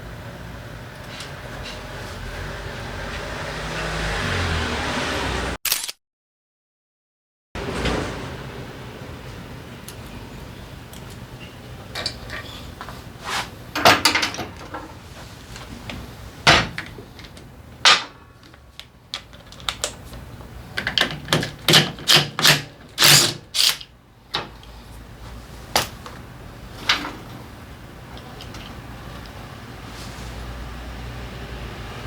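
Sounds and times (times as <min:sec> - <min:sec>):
metal tools clinking and knocking: 0:13.8 - 0:15.0, 0:26.8 - 0:27.5.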